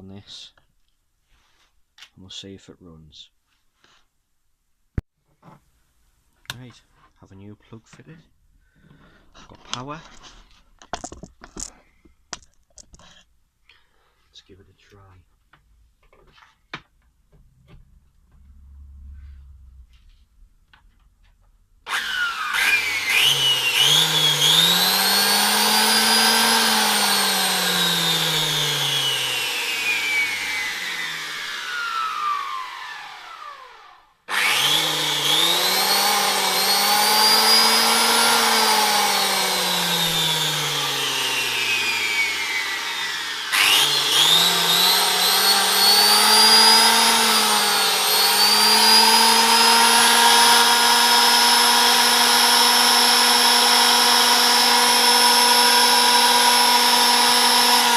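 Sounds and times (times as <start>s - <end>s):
power planer motor whining: 21.9s - 57.9s.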